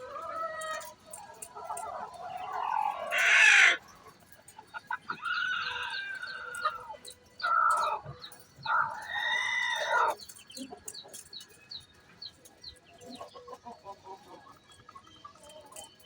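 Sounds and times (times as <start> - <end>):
hen clucking and chirping: 0.0 - 16.0
hen calling: 2.3 - 3.8, 8.7 - 10.2.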